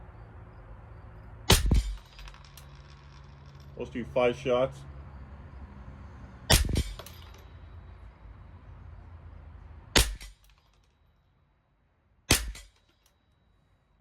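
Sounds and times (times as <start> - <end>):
rifle shots: 1.5 - 2.8, 6.5 - 7.4, 10.0 - 10.6, 12.3 - 12.9.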